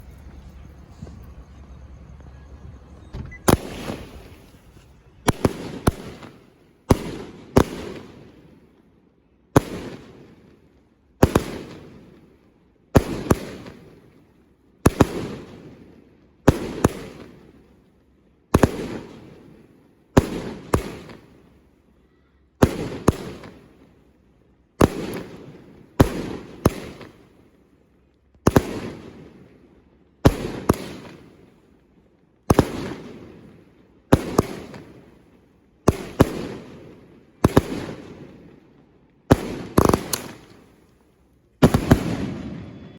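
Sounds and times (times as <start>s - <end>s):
firework shells bursting: 3.1s - 8.1s.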